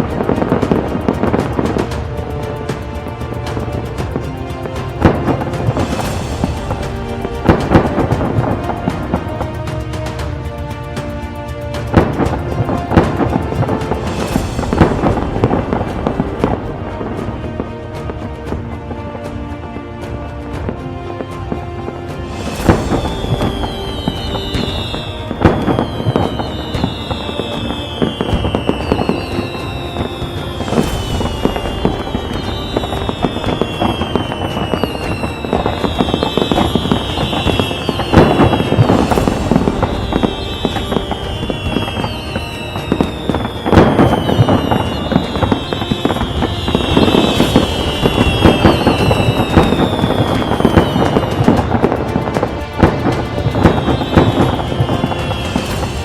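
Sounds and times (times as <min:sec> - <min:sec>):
fireworks bangs: 0:00.0 - 0:56.0
fireworks crackling: 0:00.0 - 0:56.0
falling whistling tone: 0:22.4 - 0:51.6, 0:53.6 - 0:56.0.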